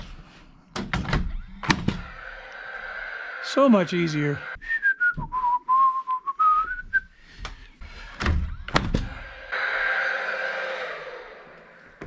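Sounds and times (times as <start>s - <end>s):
steady air hiss: 1.8s - 4.6s.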